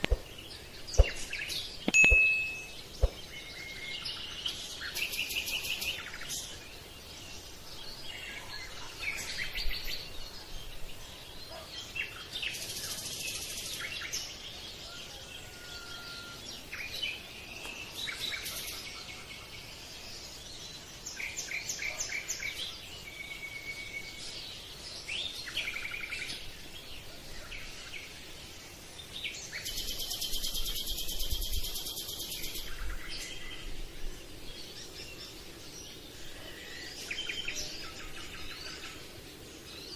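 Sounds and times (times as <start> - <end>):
birds chirping and trilling: 0.0 - 39.9
faint background hiss: 0.0 - 39.9.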